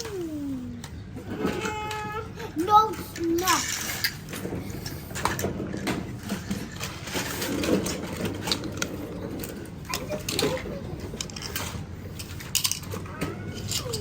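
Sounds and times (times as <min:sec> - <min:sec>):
plastic toy cars clattering: 0:00.0 - 0:14.0.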